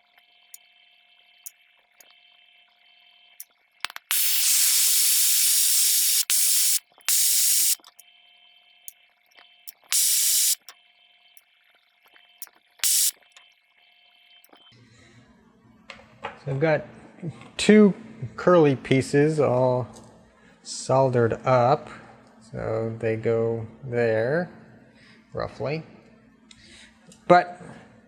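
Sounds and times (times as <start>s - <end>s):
hand torch flame hissing: 4.1s - 7.9s, 9.9s - 10.6s, 12.8s - 13.1s.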